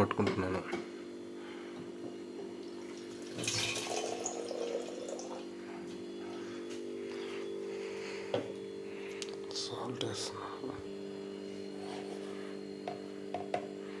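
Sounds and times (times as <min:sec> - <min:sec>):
steady low hum: 0:00.0 - 0:14.0
water running into bottle: 0:02.7 - 0:05.4.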